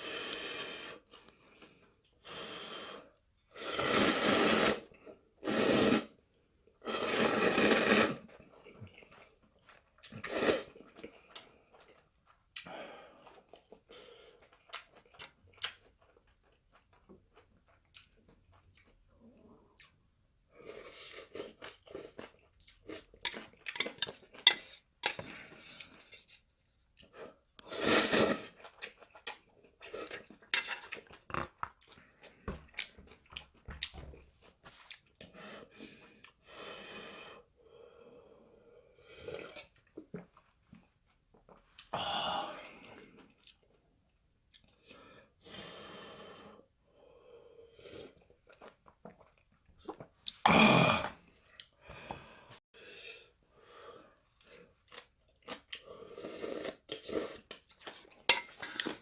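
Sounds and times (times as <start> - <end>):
noodles slurped: 3.5 - 6.2, 6.8 - 11.8, 27.0 - 33.0, 54.4 - 59.0
chewing: 8.3 - 20.0, 21.0 - 27.2, 28.5 - 35.3, 48.0 - 50.4, 54.4 - 55.9
breathing: 12.6 - 14.4, 35.3 - 39.2, 44.8 - 47.9, 51.8 - 54.6.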